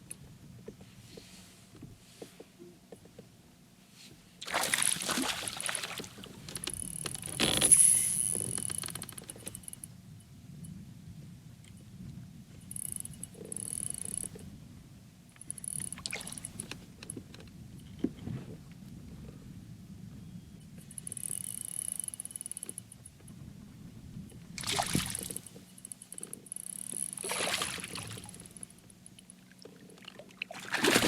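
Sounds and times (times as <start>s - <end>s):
fishing gear rustling and clattering: 4.5s - 9.8s, 12.7s - 14.4s, 20.8s - 23.1s, 24.6s - 31.0s.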